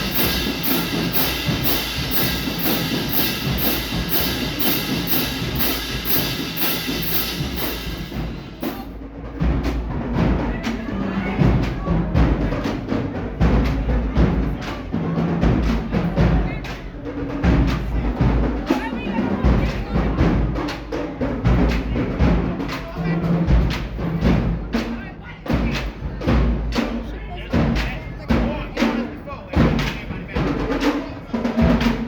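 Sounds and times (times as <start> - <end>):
cymbal beat: 0.0 - 13.9
booming low drums: 0.0 - 14.7
marching band brass: 0.0 - 32.0.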